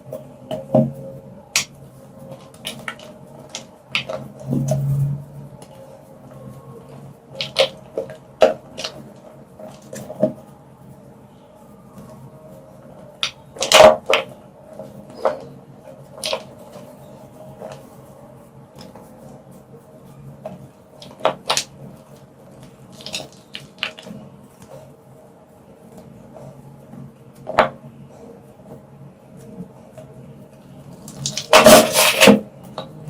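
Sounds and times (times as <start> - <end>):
faint steady hum: 0.0 - 33.0
gym chalk crunching and snapping: 7.4 - 7.8, 22.9 - 24.1, 31.0 - 32.4.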